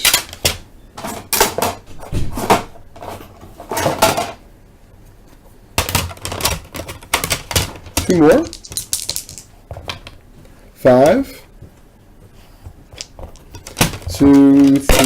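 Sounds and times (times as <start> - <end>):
plastic card holders clacking: 13.0 - 15.0.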